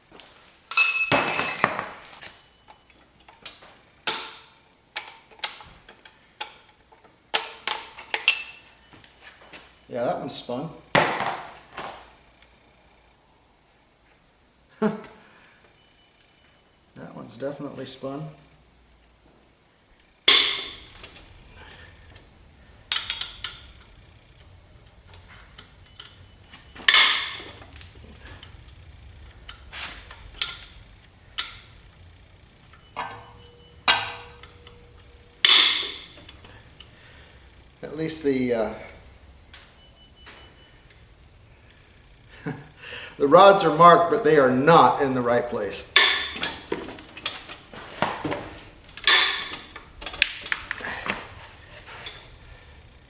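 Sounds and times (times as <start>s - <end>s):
light metal clinks: 0.7s - 2.2s
sharp metal clank: 0.7s - 2.2s, 20.3s - 21.0s, 26.8s - 27.5s, 32.9s - 36.2s, 46.0s - 48.4s, 49.0s - 51.0s
metal engine parts clinking: 0.7s - 9.2s, 20.2s - 37.4s, 43.4s - 52.8s.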